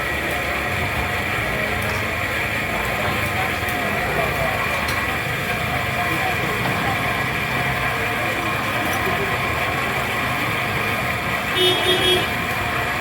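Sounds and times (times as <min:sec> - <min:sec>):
traffic: 0:00.0 - 0:13.0
voices: 0:00.0 - 0:13.0
vehicle horn beeping: 0:11.5 - 0:12.4.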